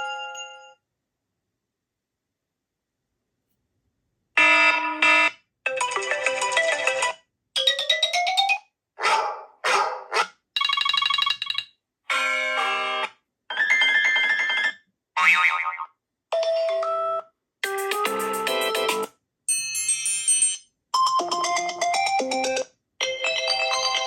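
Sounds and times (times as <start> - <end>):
electronic ringtone chimes: 10.6 - 11.7, 18.1 - 24.0.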